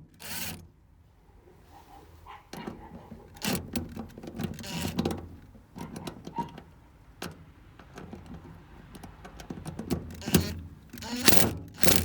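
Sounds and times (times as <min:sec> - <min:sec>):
metal hardware clicks and knocks: 0:02.5 - 0:12.0.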